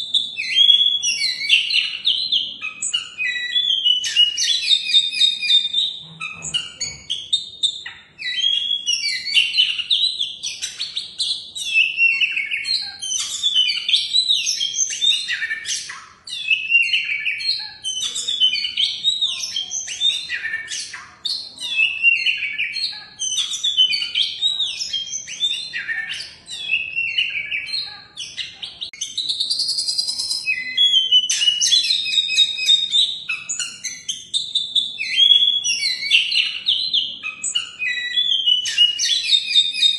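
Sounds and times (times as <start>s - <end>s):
bird singing whistled notes: 0.0s - 39.9s.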